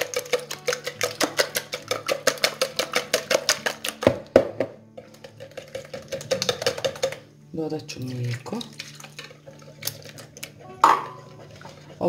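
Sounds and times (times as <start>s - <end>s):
utensil clicking against bowl: 0.0s - 4.1s, 5.0s - 7.2s.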